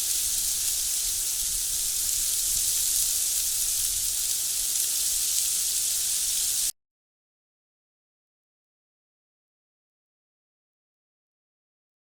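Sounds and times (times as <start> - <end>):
high-pitched hiss: 0.0 - 6.7.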